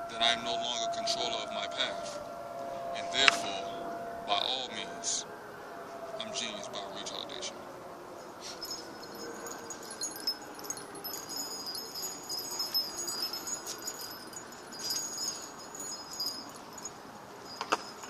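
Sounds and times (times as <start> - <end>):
wind chimes tinkling: 8.2 - 18.0.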